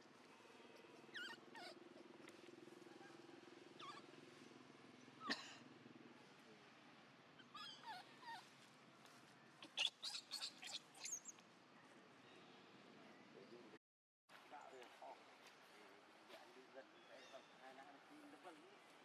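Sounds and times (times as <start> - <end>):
baby monkey squealing: 1.1 - 1.8, 3.8 - 4.0, 7.4 - 8.4, 9.6 - 11.3.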